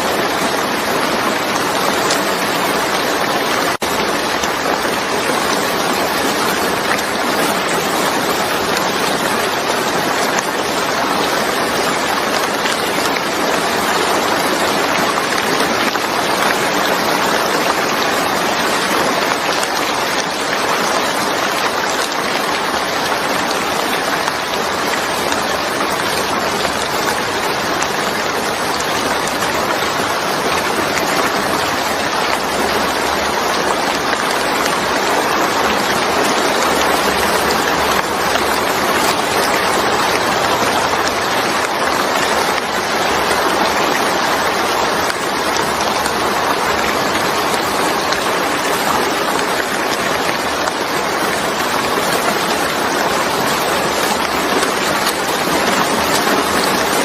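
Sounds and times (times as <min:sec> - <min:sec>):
steady rainfall: 0:00.0 - 0:57.0.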